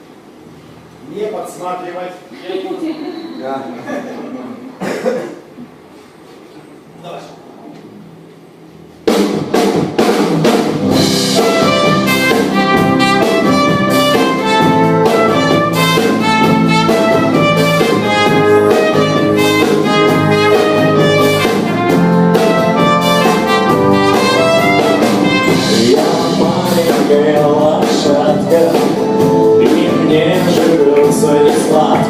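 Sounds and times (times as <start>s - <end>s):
band playing instrumental: 9.0s - 32.0s.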